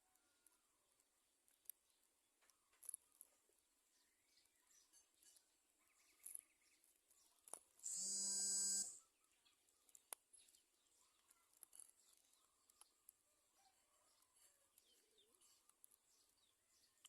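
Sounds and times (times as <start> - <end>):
faint chirps and ticks: 0.0 - 17.0
loud even buzz: 7.8 - 9.0.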